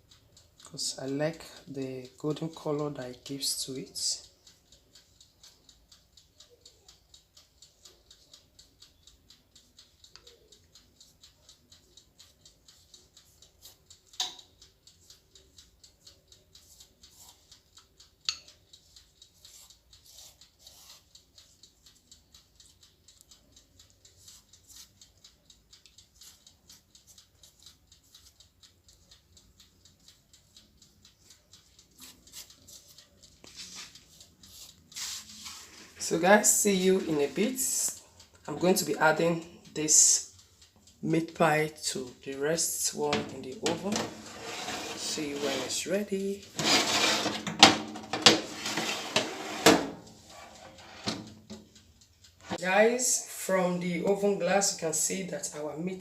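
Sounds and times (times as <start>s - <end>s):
faint regular ticking: 0.0s - 56.0s
small handling sounds: 32.0s - 36.0s.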